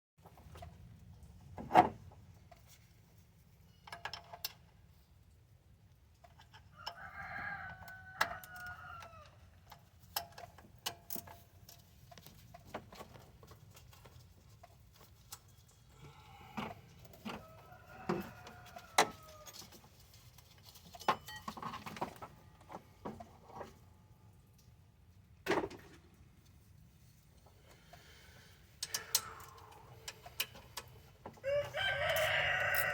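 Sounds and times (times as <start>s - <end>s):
rooster crowing: 6.8s - 9.3s, 17.4s - 19.6s, 31.4s - 32.9s.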